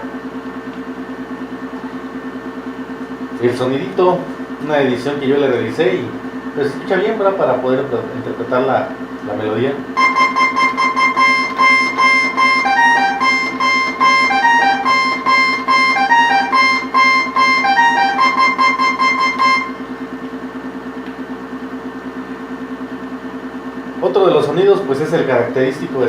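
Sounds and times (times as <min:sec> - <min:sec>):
synthesizer plucky melody: 0:10.0 - 0:20.1
pulsing low synth note: 0:10.0 - 0:20.2.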